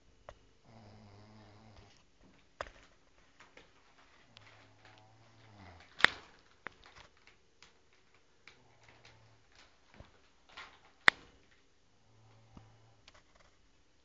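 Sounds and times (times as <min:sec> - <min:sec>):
woman snoring: 0:00.6 - 0:01.9, 0:05.0 - 0:05.8
sharp clicks: 0:04.3 - 0:11.6.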